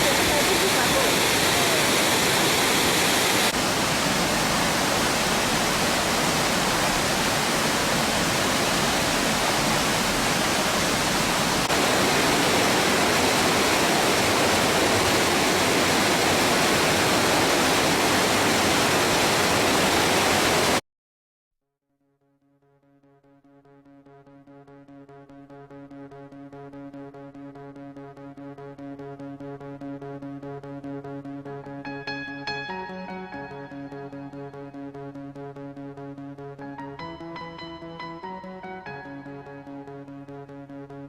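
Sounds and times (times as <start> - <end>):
waterfall rushing: 0.0 - 20.8.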